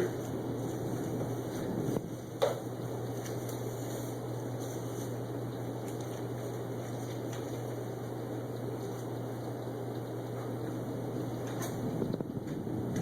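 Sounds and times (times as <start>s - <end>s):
constant low hum: 0.0s - 13.0s.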